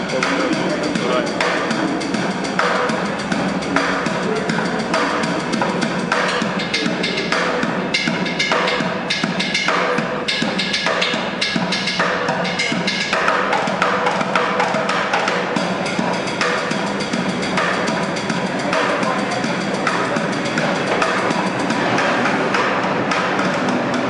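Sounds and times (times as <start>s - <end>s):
fast drumming: 0.0s - 24.0s.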